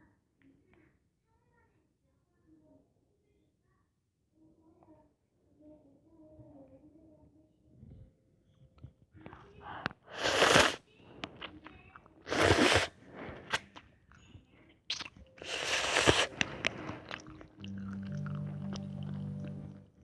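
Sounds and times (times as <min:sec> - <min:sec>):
noodles being slurped: 0:10.0 - 0:13.9, 0:14.9 - 0:20.0
wet chewing clicks: 0:14.9 - 0:20.0
low steady tone: 0:16.4 - 0:20.0.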